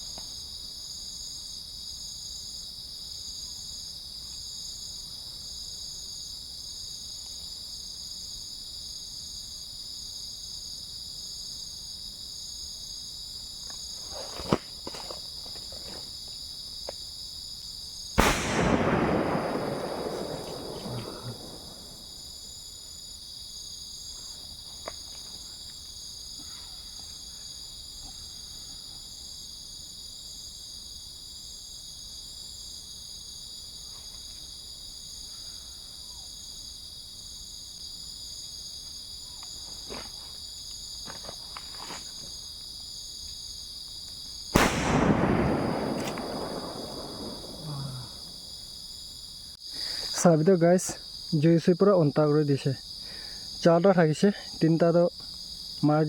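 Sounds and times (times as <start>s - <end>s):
insects droning: 0.0s - 56.0s
small sharp crack: 18.2s - 21.6s, 44.6s - 47.7s
firecracker bang with echo: 18.2s - 22.3s, 44.6s - 48.3s.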